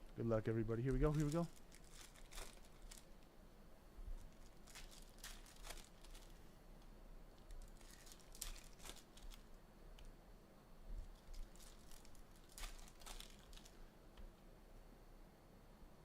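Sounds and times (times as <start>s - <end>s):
foil wrappers crinkling: 0.8s - 3.3s, 4.2s - 6.4s, 7.4s - 9.6s, 11.0s - 13.8s.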